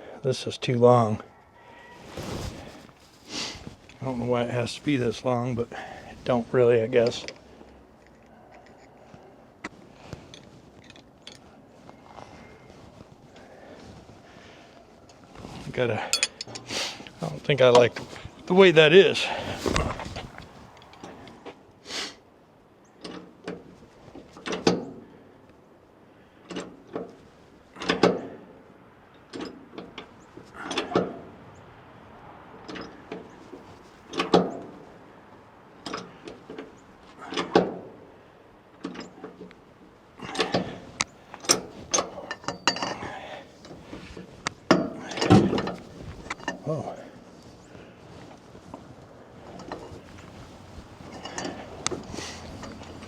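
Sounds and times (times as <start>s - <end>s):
metal parts and tools clanking: 3.8s - 13.3s, 15.1s - 18.5s, 40.2s - 53.0s.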